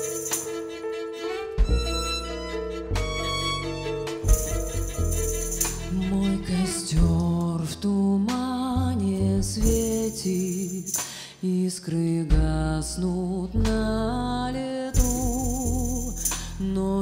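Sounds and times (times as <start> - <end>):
light percussion strokes: 0.0 - 0.7, 4.0 - 6.2
string melody with vibrato: 0.0 - 8.1
double bass notes: 1.5 - 11.0, 11.8 - 17.0.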